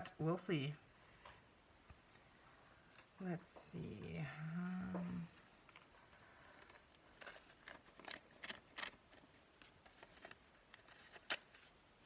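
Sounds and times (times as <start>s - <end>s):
paper rustles and taps: 6.5s - 11.8s.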